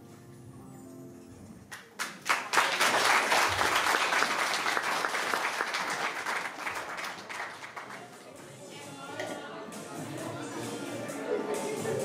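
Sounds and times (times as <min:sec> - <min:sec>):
faint music: 0:00.0 - 0:01.8, 0:06.8 - 0:12.0
audience applauding: 0:01.7 - 0:08.3.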